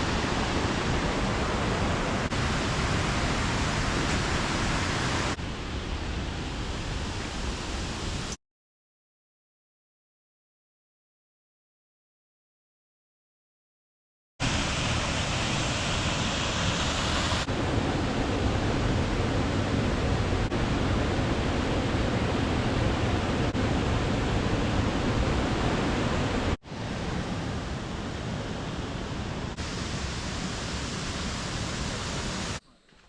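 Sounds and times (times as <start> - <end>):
waterfall rushing: 0.0 - 5.4, 14.4 - 32.6.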